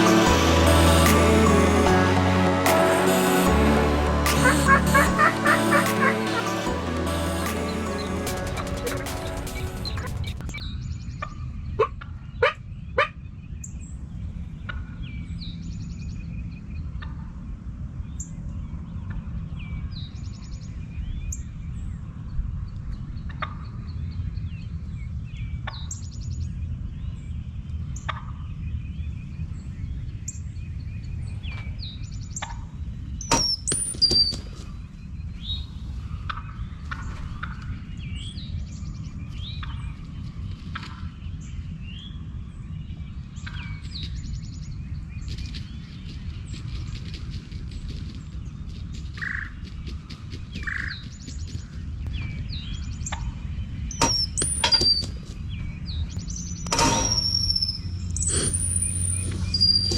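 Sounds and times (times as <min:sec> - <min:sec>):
birds calling and chirping: 0:25.3 - 0:59.9
wind rumbling: 0:28.8 - 0:59.9.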